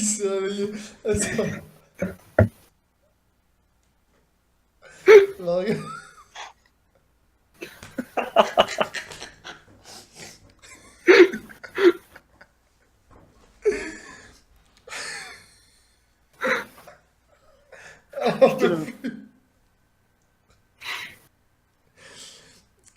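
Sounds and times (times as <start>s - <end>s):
noisy breath: 9.8s - 10.5s, 13.6s - 18.1s, 21.9s - 22.8s.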